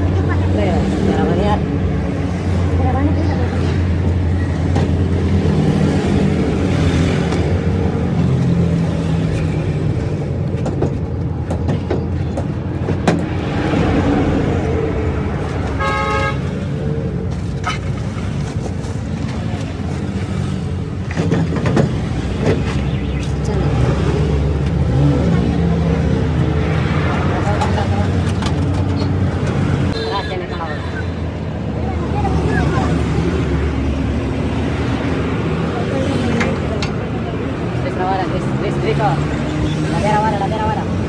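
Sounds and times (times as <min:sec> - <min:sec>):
vehicle horn toot: 0:15.8 - 0:16.4, 0:29.9 - 0:31.2.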